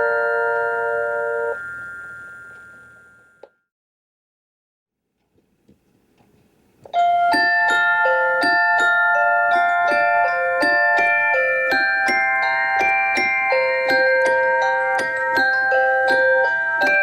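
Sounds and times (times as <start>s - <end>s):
chime clock bell notes: 0.0s - 3.5s, 7.0s - 17.0s.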